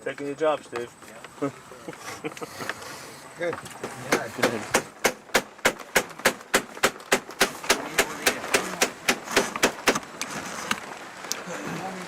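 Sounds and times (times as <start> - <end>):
hammer tapping on wood: 3.8 - 10.0.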